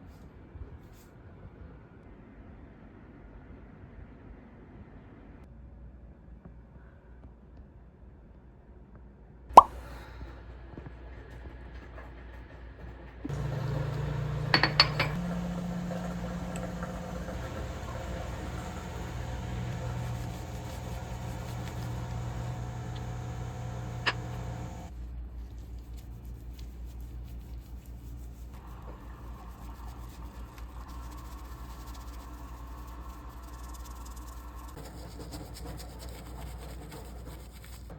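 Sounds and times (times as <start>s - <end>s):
steady hum: 13.3s - 24.9s.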